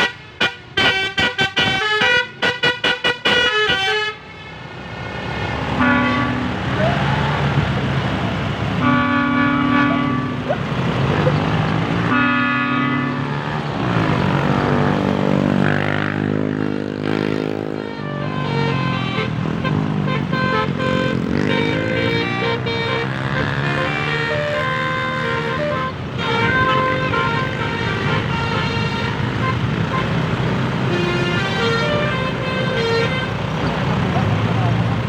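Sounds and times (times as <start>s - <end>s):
musical car horn playing a tune: 0.0s - 4.4s, 5.8s - 6.8s, 8.8s - 10.5s, 12.0s - 13.5s, 17.7s - 33.5s
road and engine noise: 0.0s - 35.0s.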